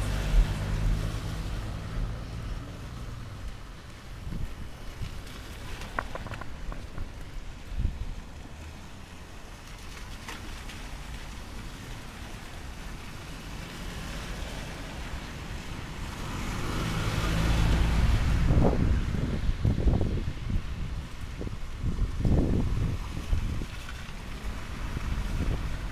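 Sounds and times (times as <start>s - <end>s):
vehicle engine passing: 0.0s - 7.1s, 13.7s - 19.3s
wind noise: 0.0s - 8.5s, 16.3s - 25.9s.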